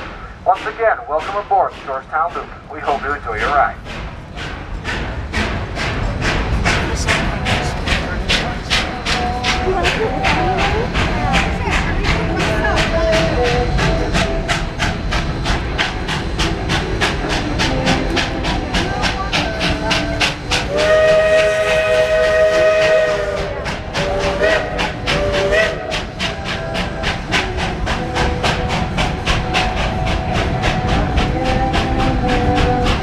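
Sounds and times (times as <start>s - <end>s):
steam locomotive chuffing: 0.0s - 33.0s
steam whistle blast: 20.6s - 33.0s.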